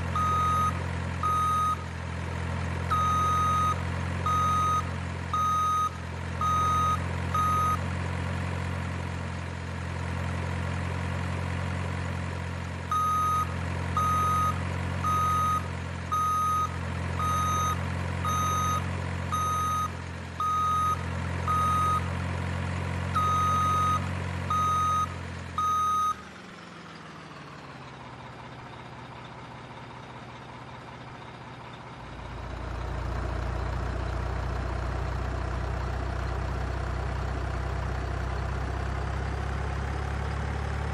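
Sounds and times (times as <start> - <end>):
simulated truck engine running: 0.0 - 40.9
reversing beeper: 0.2 - 1.8, 2.9 - 7.8, 12.9 - 22.1, 23.2 - 26.2.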